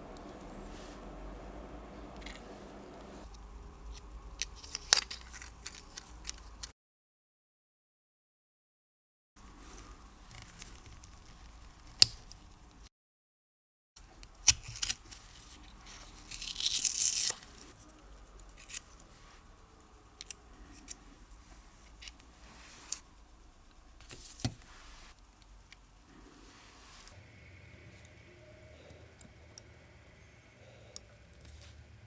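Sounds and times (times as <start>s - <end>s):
scratchy rustle: 20.6s - 23.1s.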